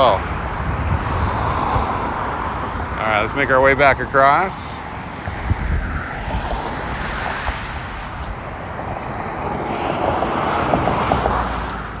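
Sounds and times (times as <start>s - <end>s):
vehicle passing: 4.6s - 12.0s.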